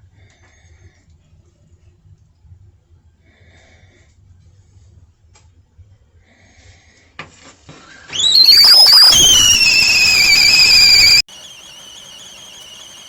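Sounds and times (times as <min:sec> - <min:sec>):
kettle whistling: 0:08.1 - 0:13.0
kettle hissing: 0:08.2 - 0:13.0.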